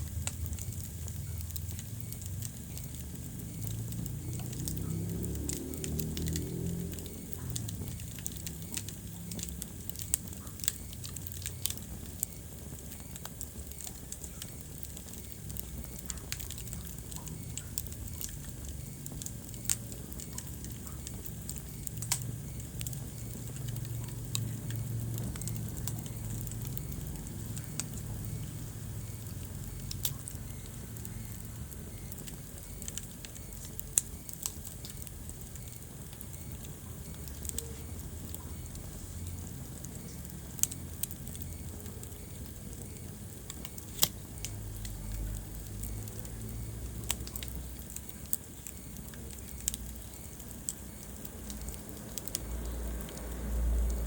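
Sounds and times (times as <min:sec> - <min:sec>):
fire crackling and popping: 0:00.0 - 0:54.0
low rumble of flames: 0:00.0 - 0:54.0.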